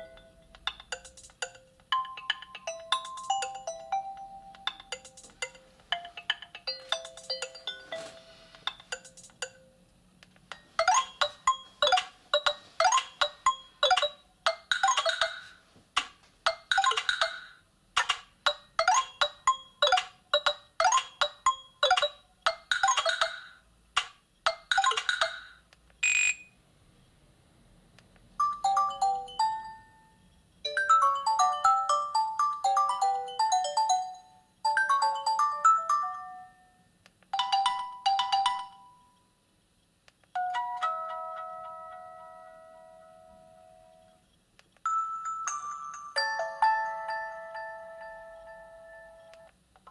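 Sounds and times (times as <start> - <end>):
phone ringtone melody: 0.0 - 9.8, 10.7 - 15.5, 28.4 - 36.8, 37.4 - 39.2, 44.9 - 49.5.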